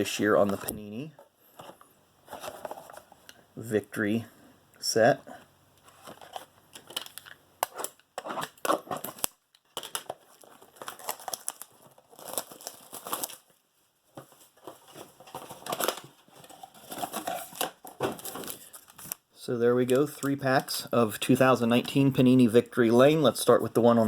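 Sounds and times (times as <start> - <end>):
wrappers crinkling: 6.0 - 13.6
cardboard tearing: 7.6 - 13.4.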